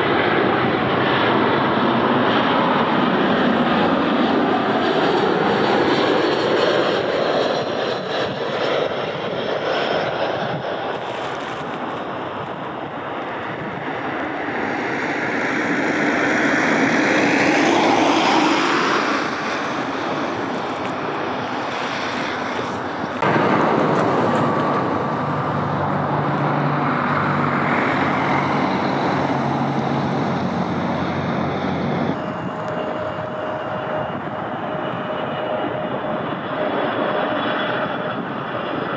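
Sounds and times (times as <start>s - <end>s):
airliner engines passing: 0.0s - 38.9s.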